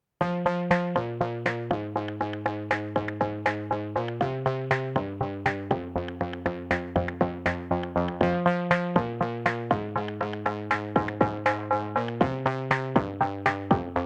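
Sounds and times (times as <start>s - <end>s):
held synth bass notes: 0.2s - 14.0s
plucked synthesizer notes: 0.2s - 14.0s.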